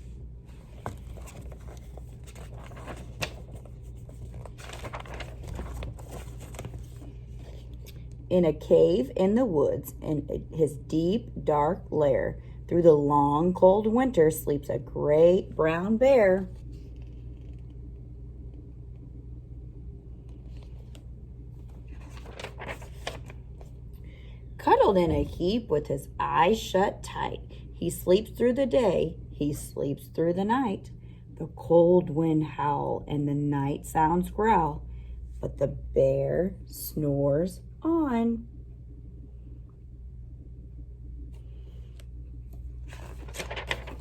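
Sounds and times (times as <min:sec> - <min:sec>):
steady low hum: 0:00.0 - 0:44.0
paper book rustling and clicking: 0:00.5 - 0:08.1, 0:20.2 - 0:23.8, 0:41.9 - 0:44.0.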